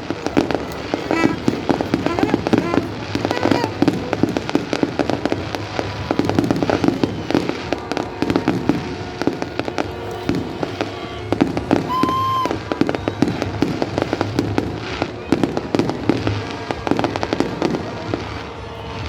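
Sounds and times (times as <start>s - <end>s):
fireworks bangs and crackling: 0.0s - 19.0s
whistling tone: 11.7s - 13.4s.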